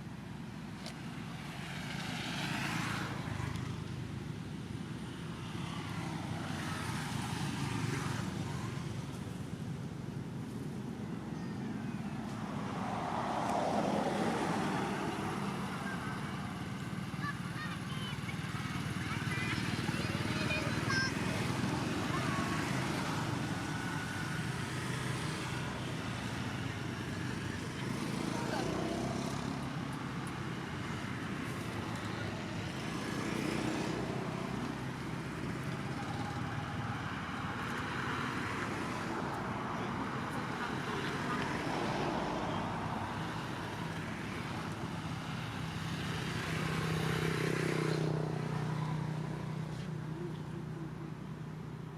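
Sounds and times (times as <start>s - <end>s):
rumble of traffic: 0.0s - 51.9s
vehicle passing by: 12.2s - 51.4s.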